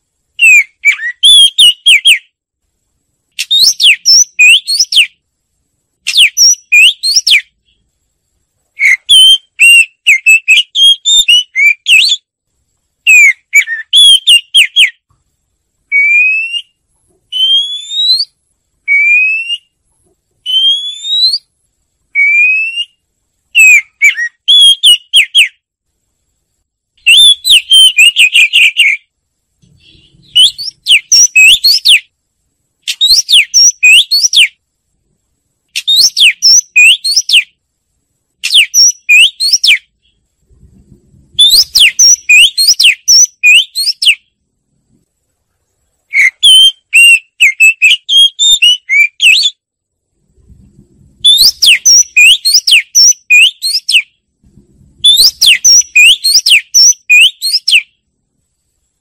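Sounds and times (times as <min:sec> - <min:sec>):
bird singing whistled phrases: 0:00.4 - 0:02.3, 0:03.4 - 0:05.2, 0:06.1 - 0:07.5, 0:08.8 - 0:12.3, 0:13.1 - 0:15.0, 0:15.9 - 0:19.8, 0:20.4 - 0:21.5, 0:22.2 - 0:23.0, 0:23.6 - 0:25.6, 0:27.0 - 0:29.1, 0:29.7 - 0:32.1, 0:32.9 - 0:34.6, 0:35.8 - 0:37.6, 0:38.4 - 0:40.2, 0:41.4 - 0:44.2, 0:46.1 - 0:49.6, 0:51.2 - 0:54.2, 0:55.0 - 0:57.9.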